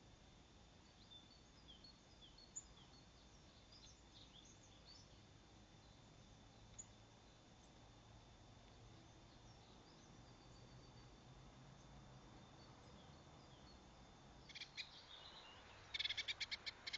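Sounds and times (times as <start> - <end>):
faint high whine: 0.0 - 16.9
bird chirps and twitters: 14.5 - 16.9.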